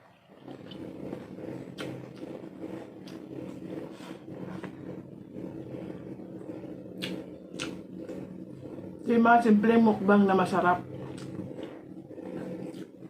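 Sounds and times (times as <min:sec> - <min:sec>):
person chewing food: 0:00.0 - 0:05.1, 0:05.8 - 0:08.3, 0:10.9 - 0:13.0
low steady rumble: 0:00.0 - 0:13.0
mouth clicks and smacks: 0:07.0 - 0:08.2, 0:11.1 - 0:11.7.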